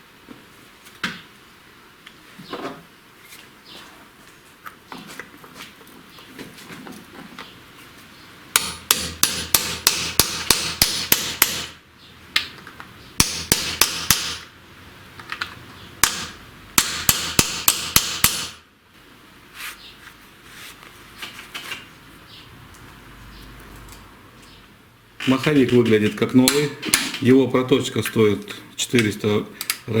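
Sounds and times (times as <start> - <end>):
hammer striking metal: 8.6 - 11.8, 13.2 - 14.5, 16.0 - 18.6.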